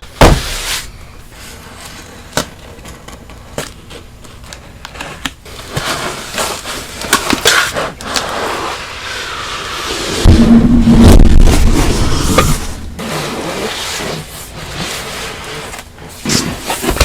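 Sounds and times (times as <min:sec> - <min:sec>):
packaging crinkling and scraping: 0:11.2 - 0:17.0.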